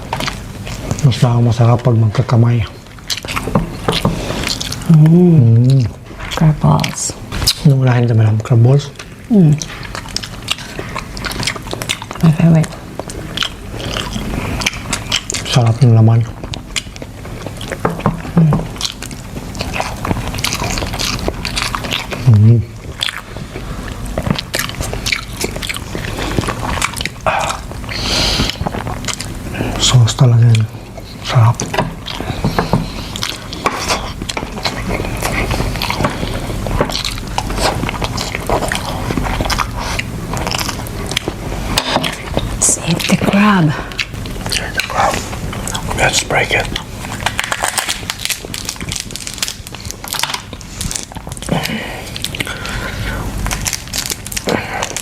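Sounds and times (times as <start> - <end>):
chewing and wet mouth smacks: 0.0 - 7.7, 8.4 - 55.0
crab shell cracking: 16.4 - 55.0.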